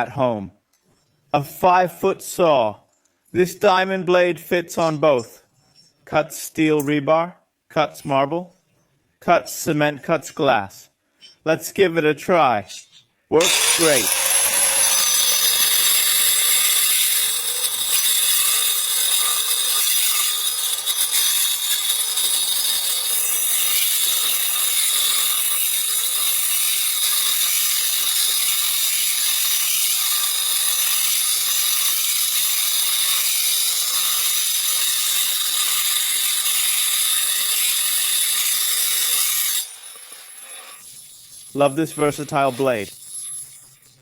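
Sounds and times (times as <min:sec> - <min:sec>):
angle grinder cutting: 0:13.4 - 0:44.0.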